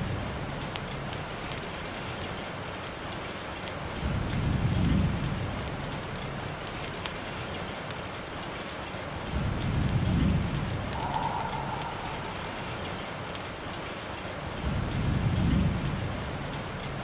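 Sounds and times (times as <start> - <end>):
steady rain falling: 0.0 - 17.0
soft low rumble: 9.8 - 13.5.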